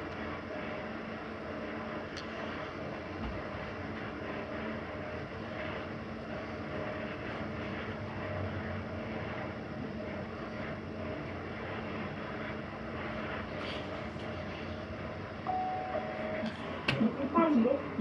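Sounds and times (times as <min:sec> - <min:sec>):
elevator running hum: 0:00.0 - 0:18.0
faint steady tone: 0:15.4 - 0:16.6.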